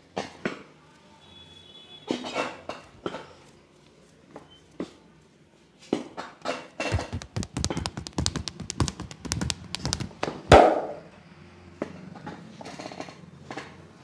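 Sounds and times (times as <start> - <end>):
hand taps and slaps on body: 6.9 - 10.7.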